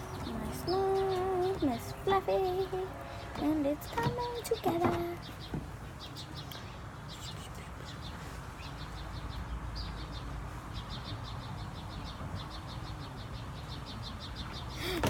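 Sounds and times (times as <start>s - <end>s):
bird chirping: 0.0s - 15.0s
low outdoor rumble: 0.0s - 15.0s.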